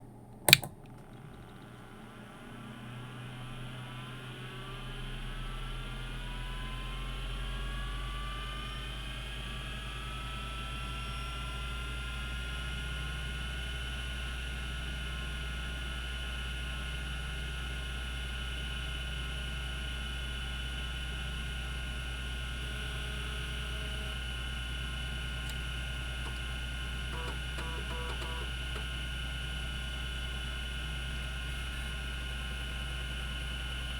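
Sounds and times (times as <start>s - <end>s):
sharp click: 0.4s - 1.2s
hard disk spindle whine: 0.5s - 33.9s.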